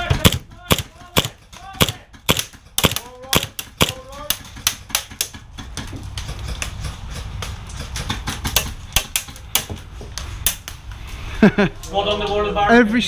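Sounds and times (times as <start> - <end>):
airsoft gun shots: 0.0 - 5.2.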